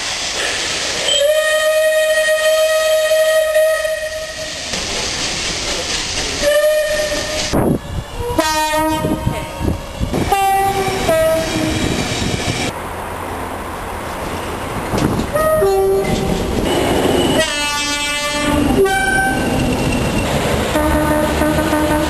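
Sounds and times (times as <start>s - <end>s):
passing train running noise: 0.0s - 22.0s
train two-tone horn: 1.1s - 4.6s, 6.4s - 7.6s, 8.2s - 12.0s, 15.3s - 19.6s, 20.7s - 22.0s.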